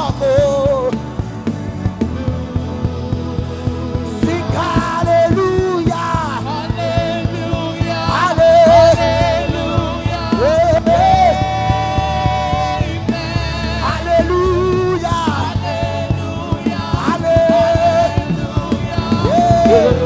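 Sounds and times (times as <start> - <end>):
steady drum beat: 0.0 - 20.0
sustained keyboard chords: 0.0 - 20.0
person singing with vibrato: 4.1 - 20.0.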